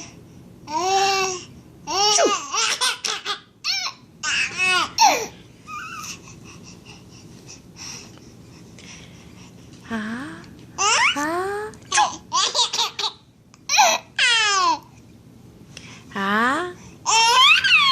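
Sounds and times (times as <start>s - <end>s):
baby laughing: 1.9s - 6.1s, 11.9s - 14.8s, 17.1s - 17.9s
baby babbling: 17.1s - 17.9s.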